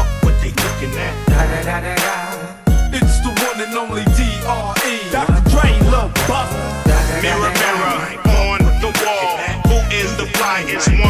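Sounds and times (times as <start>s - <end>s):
heavy bass kicks: 0.0s - 2.0s, 2.7s - 3.4s, 4.1s - 7.7s, 8.3s - 9.0s, 9.6s - 11.0s
rapping over a beat: 0.0s - 11.0s.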